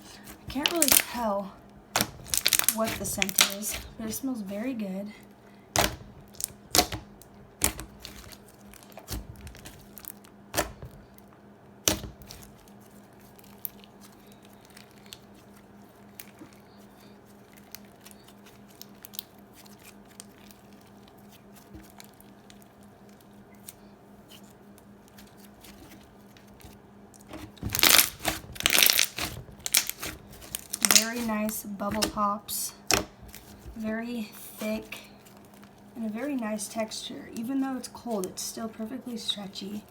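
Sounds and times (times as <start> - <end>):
slime crackling and clicking: 0.6 - 1.2, 1.9 - 3.8, 5.8 - 10.8, 27.2 - 32.2.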